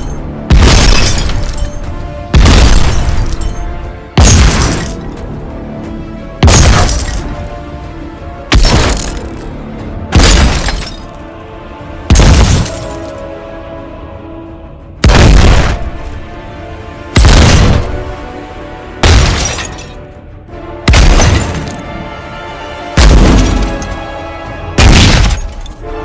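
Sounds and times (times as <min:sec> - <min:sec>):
glass shattering: 0:00.0 - 0:01.8, 0:02.4 - 0:03.6, 0:04.2 - 0:05.2, 0:06.4 - 0:07.4, 0:08.5 - 0:09.4, 0:10.2 - 0:11.1, 0:12.1 - 0:13.2, 0:19.0 - 0:20.0, 0:20.9 - 0:21.8, 0:23.0 - 0:24.0, 0:24.8 - 0:25.8
background music: 0:00.0 - 0:26.0
explosion blasts: 0:15.0 - 0:15.9, 0:17.2 - 0:17.9.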